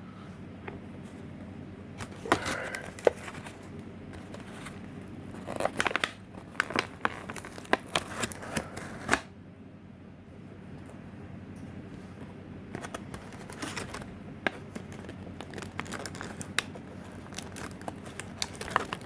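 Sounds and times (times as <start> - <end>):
plastic body shell crackling: 2.0 - 4.8, 5.4 - 8.6, 12.8 - 19.0.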